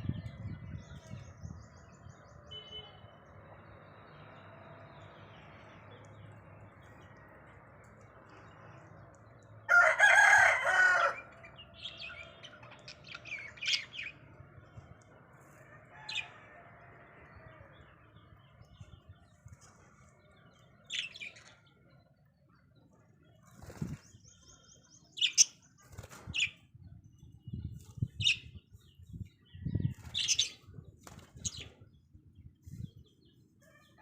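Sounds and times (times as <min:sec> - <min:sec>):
budgerigars squawking and chirping: 0:11.3 - 0:14.2, 0:25.2 - 0:25.6, 0:30.1 - 0:30.6.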